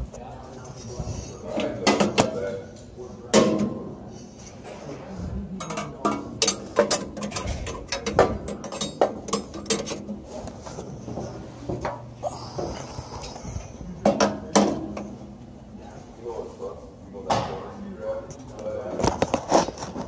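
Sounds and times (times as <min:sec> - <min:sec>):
metallic clicks and clanks of tools: 0:05.6 - 0:10.2.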